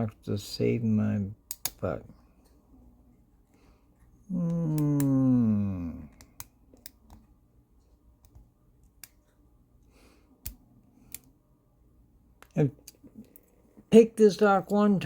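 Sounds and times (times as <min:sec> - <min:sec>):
man groaning: 0:04.3 - 0:06.2.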